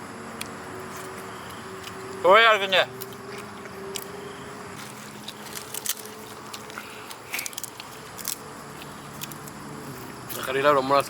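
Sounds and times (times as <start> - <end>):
steady low hum: 0.0 - 11.0
person chewing: 0.8 - 2.2, 3.0 - 4.1, 4.8 - 10.5
small clicks and crunches: 4.8 - 10.6.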